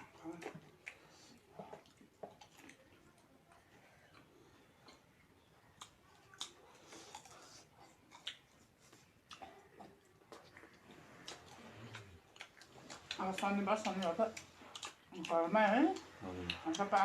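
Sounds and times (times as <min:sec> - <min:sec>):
soft crunching while eating: 0:00.0 - 0:17.0.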